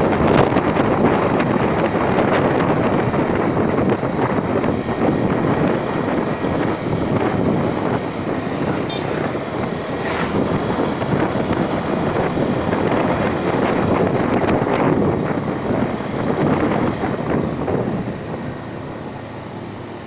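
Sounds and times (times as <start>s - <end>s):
wind buffeting microphone: 0.0s - 19.5s
vehicle running: 0.0s - 20.0s.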